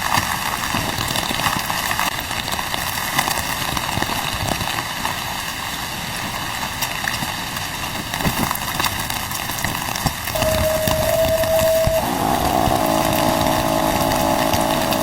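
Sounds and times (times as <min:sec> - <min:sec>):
steady rain falling: 0:00.0 - 0:15.0
motor hum: 0:10.4 - 0:15.0.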